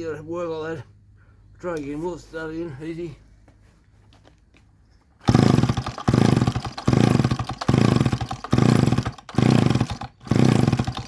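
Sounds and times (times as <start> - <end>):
chainsaw being pull-started: 5.2 - 11.0.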